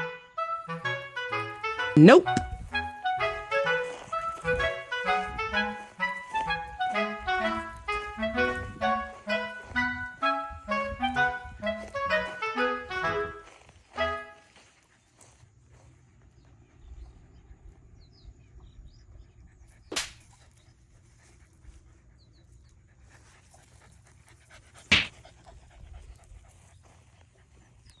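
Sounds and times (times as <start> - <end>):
dog panting: 20.6 - 28.0.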